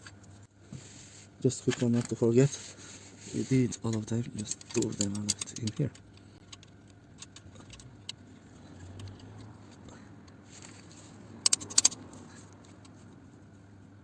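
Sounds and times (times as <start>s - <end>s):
metal tools scraping and clicking: 3.4s - 8.2s, 10.3s - 13.0s.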